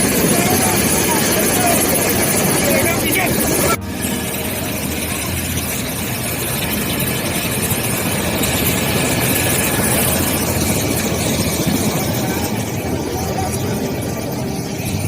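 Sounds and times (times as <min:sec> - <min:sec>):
helicopter engine and rotor running: 0:00.0 - 0:15.0.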